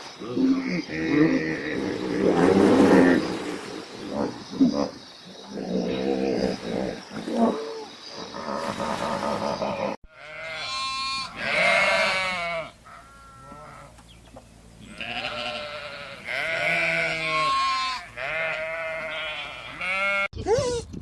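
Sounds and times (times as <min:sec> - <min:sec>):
livestock bleating: 0:10.1 - 0:13.9, 0:14.8 - 0:20.3.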